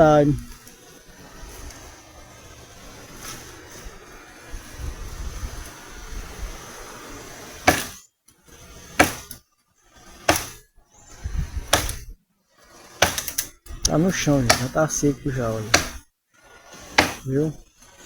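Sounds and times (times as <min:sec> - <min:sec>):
blade chopping into wood: 0:07.6 - 0:08.0, 0:08.9 - 0:09.4, 0:10.1 - 0:10.6, 0:11.6 - 0:12.1, 0:13.0 - 0:13.5, 0:14.4 - 0:14.8, 0:15.6 - 0:16.0, 0:16.9 - 0:17.3.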